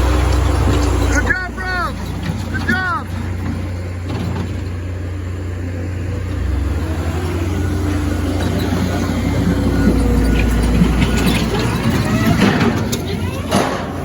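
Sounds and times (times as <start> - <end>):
skid steer engine rumbling: 0.0 - 14.0.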